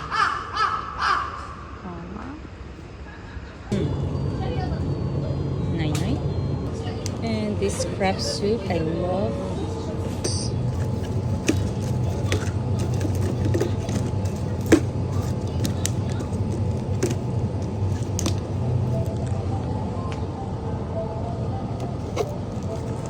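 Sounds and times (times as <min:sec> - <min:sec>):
dining room hum: 0:00.0 - 0:23.0
tableware clicking and clinking: 0:10.7 - 0:18.3.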